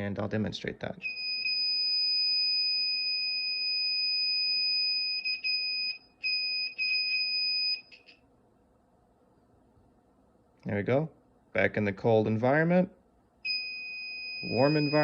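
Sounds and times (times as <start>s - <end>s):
high-pitched buzzer tone: 13.5s - 15.0s.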